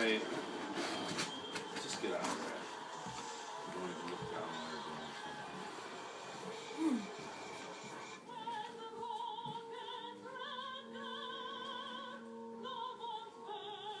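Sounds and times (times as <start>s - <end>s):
music: 0.0s - 14.0s
operatic singing with vibrato: 8.0s - 14.0s.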